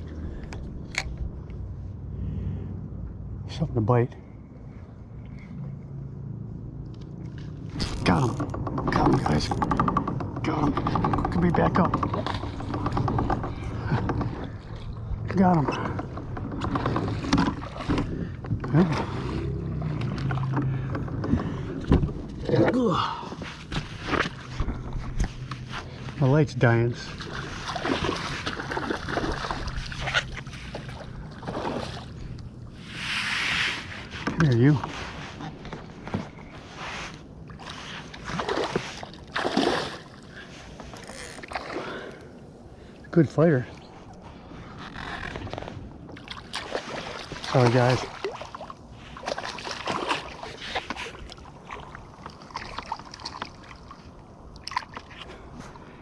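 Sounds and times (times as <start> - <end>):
water sloshing against kayak: 7.3 - 56.0
water splashes: 26.6 - 33.0, 37.5 - 40.5, 46.1 - 55.6.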